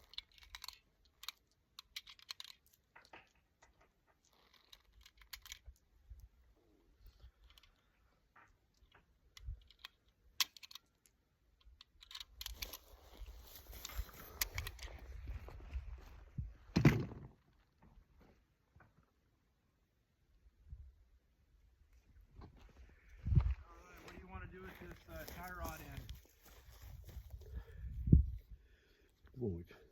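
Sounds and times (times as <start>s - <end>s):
light clicks and rustling: 0.0s - 6.3s, 7.0s - 15.1s.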